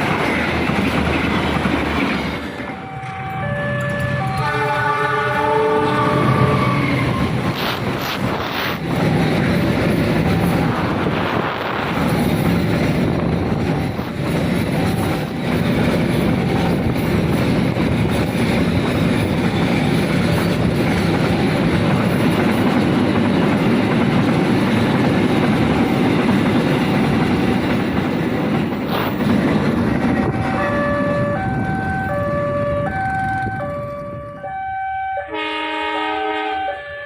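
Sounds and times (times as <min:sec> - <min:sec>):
train wheels clattering on rails: 0:00.0 - 0:04.8, 0:06.2 - 0:34.4.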